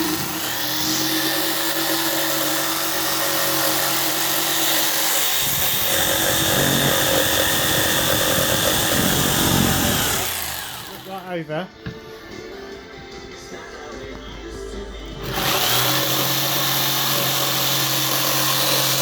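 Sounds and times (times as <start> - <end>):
electric jigsaw cutting wood: 0.0 - 11.2, 15.2 - 19.0.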